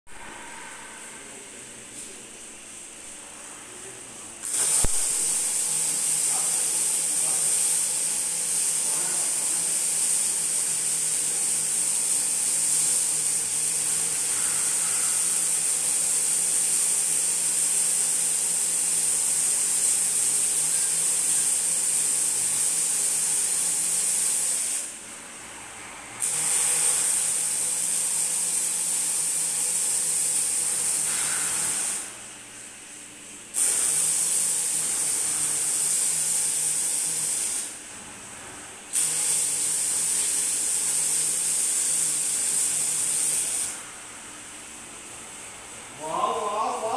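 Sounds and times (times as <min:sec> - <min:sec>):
welding arc hissing: 0:04.4 - 0:32.2, 0:32.9 - 0:44.0.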